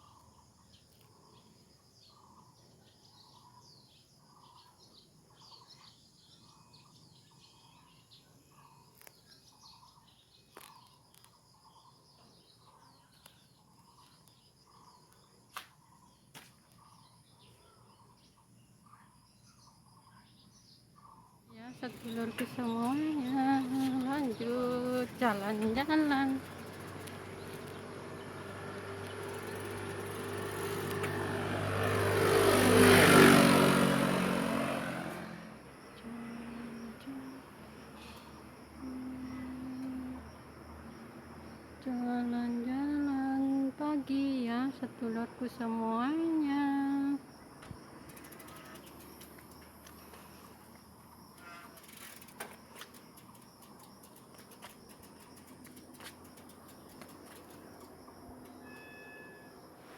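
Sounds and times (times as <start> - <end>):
vehicle engine passing by: 21.8 - 36.8.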